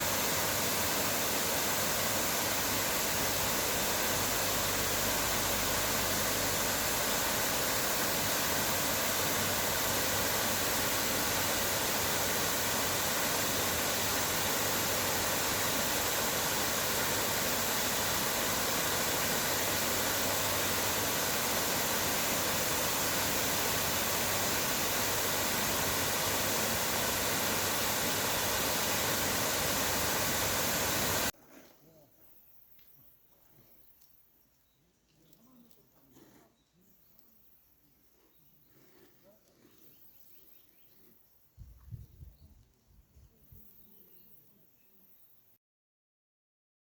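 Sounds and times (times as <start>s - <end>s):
rush of flowing water: 0.0s - 31.3s.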